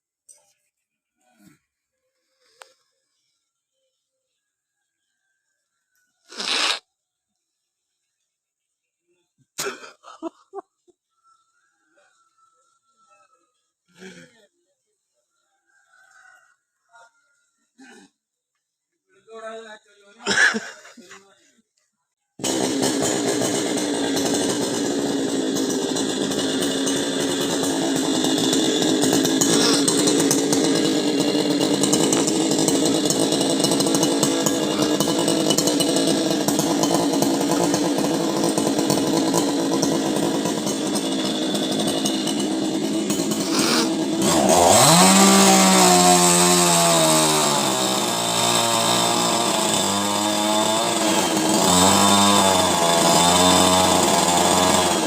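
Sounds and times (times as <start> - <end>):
chainsaw running and revving: 6.3 - 6.8, 22.4 - 55.0.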